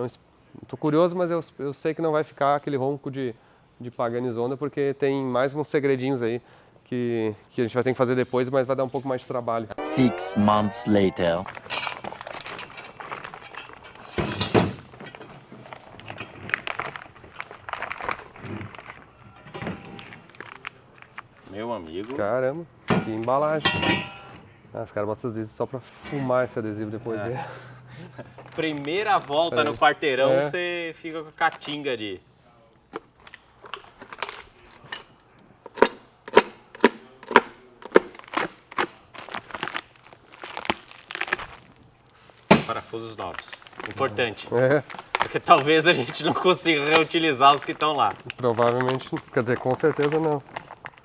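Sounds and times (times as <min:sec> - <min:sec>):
cardboard packaging rustling: 0:11.2 - 0:14.1, 0:15.6 - 0:19.1, 0:37.3 - 0:51.0
cardboard crackling: 0:39.1 - 0:41.8, 0:43.1 - 0:51.0.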